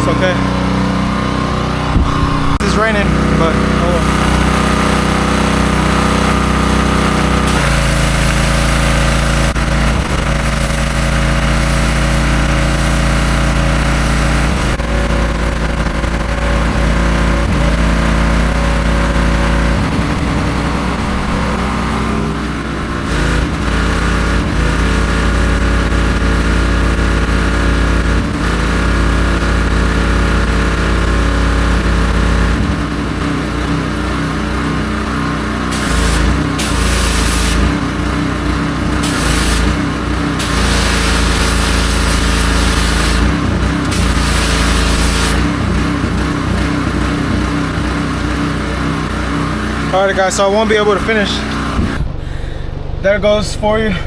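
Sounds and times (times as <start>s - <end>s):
pressure washer engine running: 0.0s - 54.0s
water spray hiss: 35.7s - 37.8s, 39.0s - 45.6s.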